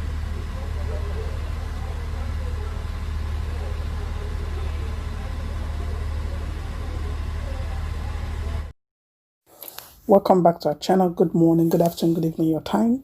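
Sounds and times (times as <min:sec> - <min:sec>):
faint voices: 0:00.0 - 0:08.7
vehicle engine rumble: 0:00.0 - 0:08.7.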